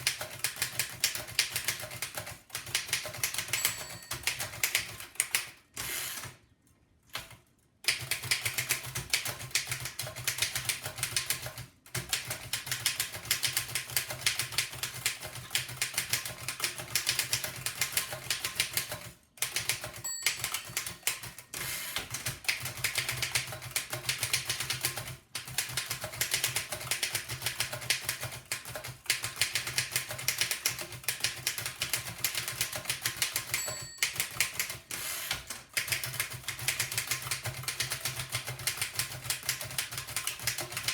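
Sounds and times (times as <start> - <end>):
typewriter keystrokes clattering: 0.0 - 5.6, 7.2 - 21.4, 22.0 - 40.9
typewriter bell ring: 3.3 - 5.0, 19.8 - 21.8, 33.3 - 35.0.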